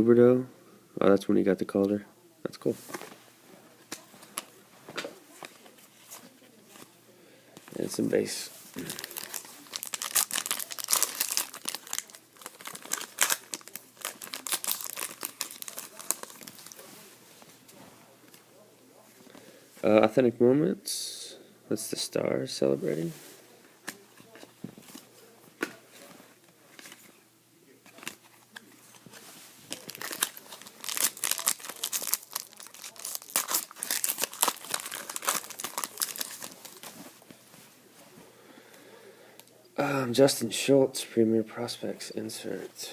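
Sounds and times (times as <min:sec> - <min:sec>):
wrapper crinkling: 0:08.7 - 0:17.0, 0:27.9 - 0:37.2
trading cards rustling and clicking: 0:08.8 - 0:16.8, 0:27.8 - 0:37.1
wrapper tearing: 0:08.8 - 0:16.9, 0:29.7 - 0:37.0.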